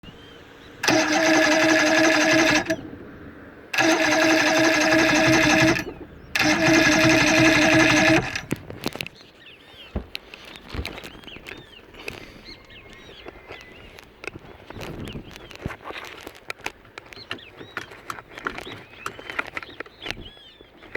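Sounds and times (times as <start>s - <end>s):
outboard electric starter cranking: 0.8s - 3.0s, 3.7s - 8.9s.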